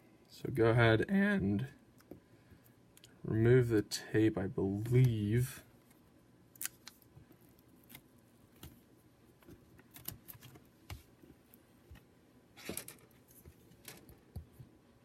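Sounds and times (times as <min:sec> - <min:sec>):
fingers clicking and tapping laptop: 0:09.5 - 0:11.0.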